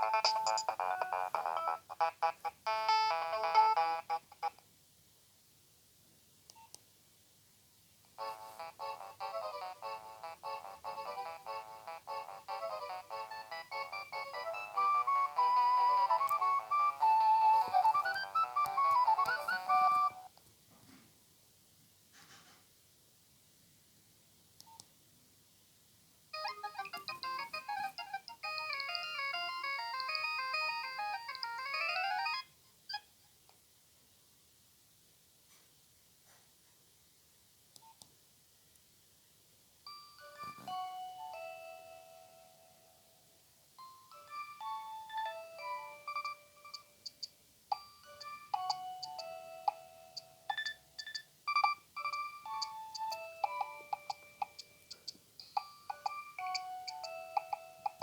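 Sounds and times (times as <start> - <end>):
mobile phone ringtone melody: 0.0 - 4.4, 8.2 - 20.3, 26.4 - 32.5, 39.9 - 42.9, 43.8 - 58.0.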